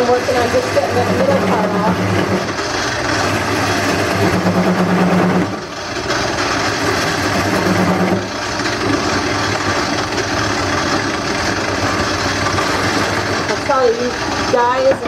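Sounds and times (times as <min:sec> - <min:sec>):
lathe motor hum: 0:00.0 - 0:15.0.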